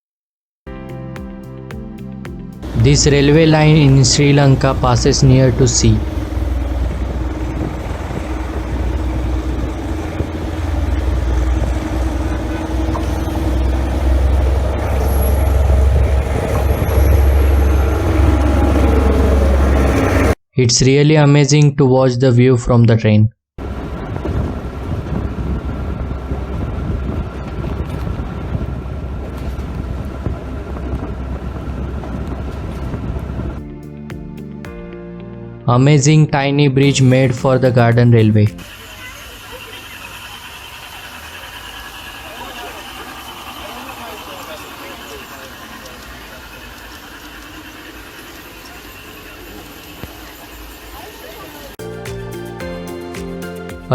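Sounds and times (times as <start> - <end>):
faint hum: 2.6 - 20.4
train rumbling along track: 2.6 - 20.4, 23.6 - 33.6, 36.8 - 51.8
wind buffeting microphone: 2.6 - 20.4, 23.6 - 33.6.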